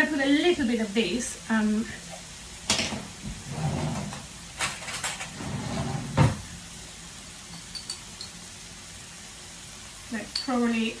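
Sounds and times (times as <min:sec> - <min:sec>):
faint frying sizzle: 0:00.0 - 0:11.0
spoon knocking jar and pan: 0:10.3 - 0:10.6.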